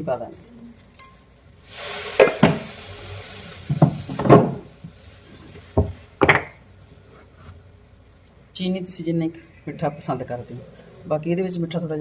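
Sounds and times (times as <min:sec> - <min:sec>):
tea leaves hissing in boiling water: 0:01.3 - 0:06.3.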